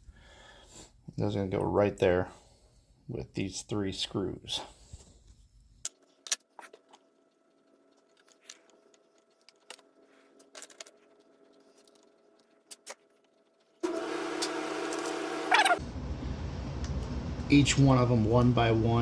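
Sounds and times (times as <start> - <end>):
small parts clicking and tapping: 5.2 - 13.8.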